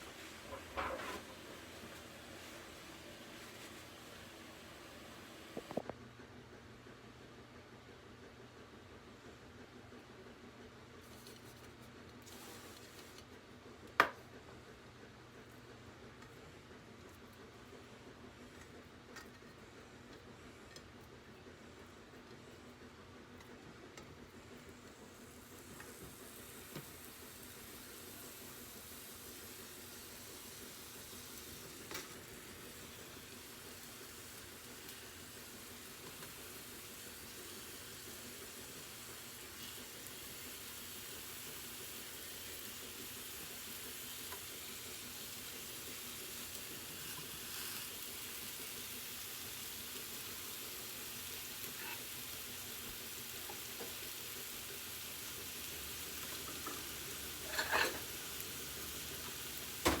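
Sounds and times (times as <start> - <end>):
food sizzling in a frying pan: 12.3 - 13.2, 24.7 - 60.0.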